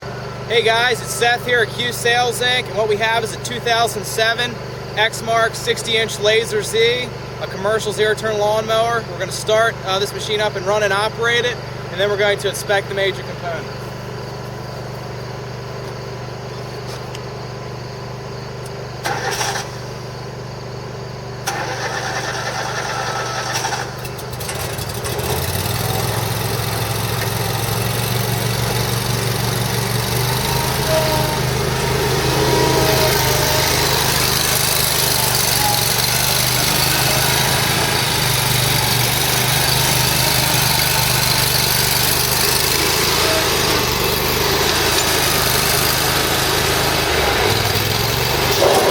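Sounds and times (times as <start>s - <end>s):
mower engine running: 0.0s - 48.9s
mower engine cranking: 18.6s - 20.0s, 21.4s - 48.9s.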